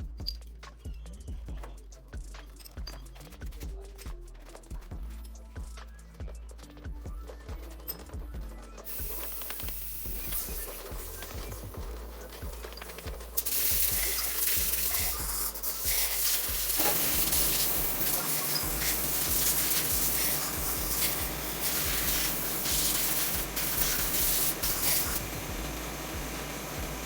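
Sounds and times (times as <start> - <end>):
spraying hiss: 13.3 - 27.0.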